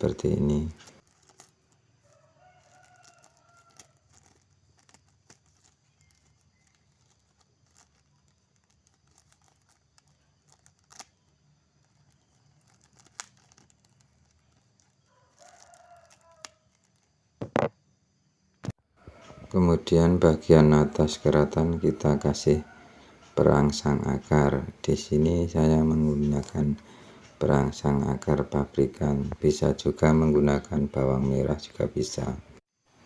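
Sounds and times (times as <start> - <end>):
faint rooster crowing: 1.4 - 4.9, 5.6 - 8.0, 14.3 - 17.6, 19.0 - 25.2.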